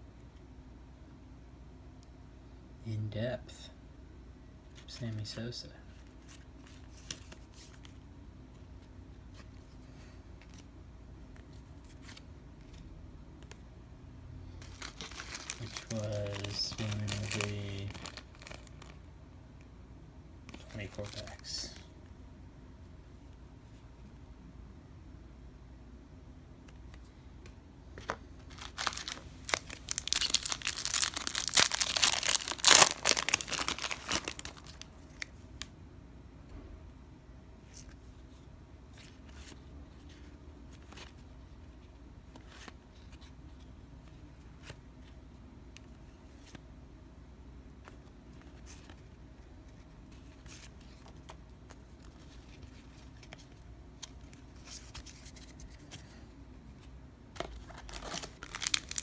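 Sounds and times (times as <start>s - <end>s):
cards clicking and rustling: 14.6s - 19.0s, 28.0s - 35.3s, 49.7s - 56.1s, 57.4s - 59.0s
foil wrapper tearing and crinkling: 14.6s - 19.0s, 28.5s - 35.3s, 57.6s - 59.0s.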